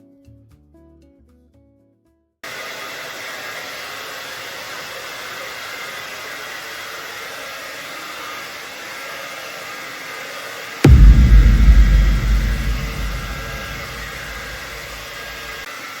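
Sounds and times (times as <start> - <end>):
steady rushing noise: 10.9 - 15.4.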